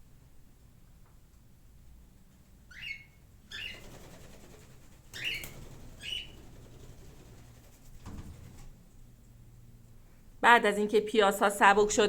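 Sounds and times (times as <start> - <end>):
bird chirping: 2.7 - 3.9, 5.1 - 6.5.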